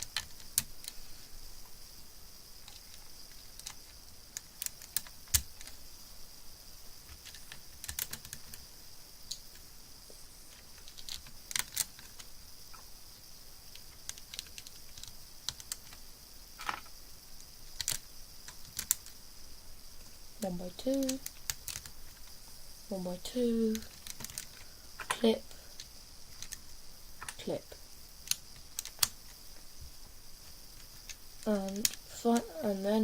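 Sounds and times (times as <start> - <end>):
plastic bricks clicking: 0.0 - 1.0, 2.6 - 5.8, 7.1 - 8.6, 10.5 - 12.8, 13.7 - 16.0, 16.6 - 17.0, 17.7 - 19.2, 20.8 - 22.3, 23.6 - 25.2, 25.8 - 27.5, 28.2 - 29.7, 30.4 - 32.5
faint steady hiss: 0.0 - 33.0.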